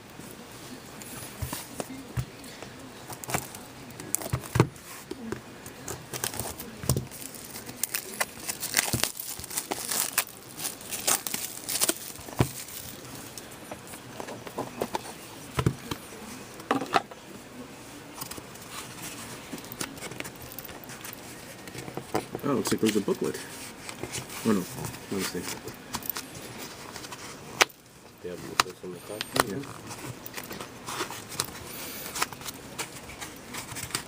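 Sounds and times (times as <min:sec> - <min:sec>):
wrapping torn and crumpled: 0:05.8 - 0:13.4.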